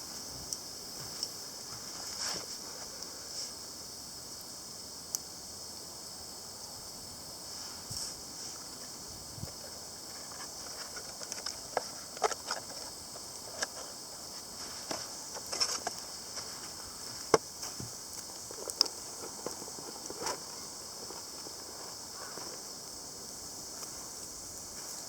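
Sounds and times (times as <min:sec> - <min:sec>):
steady high hiss: 0:00.0 - 0:25.0
wood fire crackling: 0:00.0 - 0:25.0.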